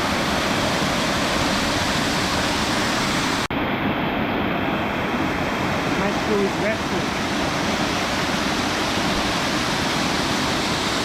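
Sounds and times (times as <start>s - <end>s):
water rushing: 0.0s - 11.0s.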